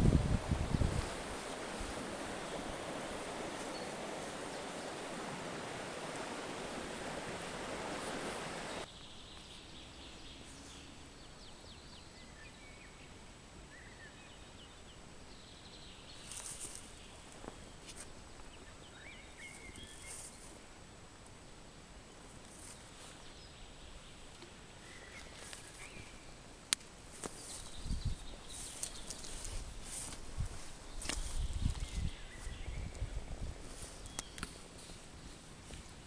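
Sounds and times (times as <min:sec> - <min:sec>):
steady rushing outdoor noise: 0:00.0 - 0:08.9.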